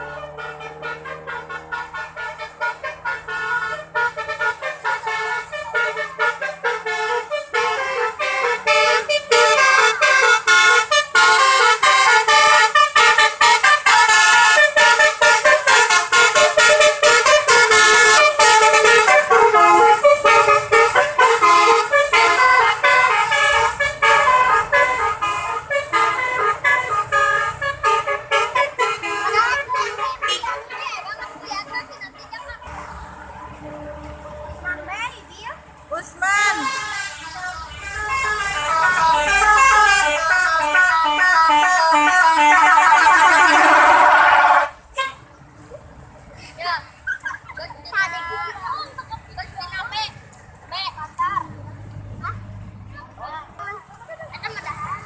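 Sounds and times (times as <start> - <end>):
bus musical horn melody: 0.0 - 30.8, 36.4 - 45.3.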